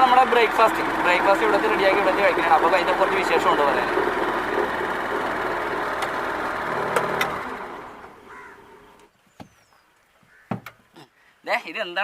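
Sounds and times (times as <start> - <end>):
scooter engine running: 0.0 - 9.0.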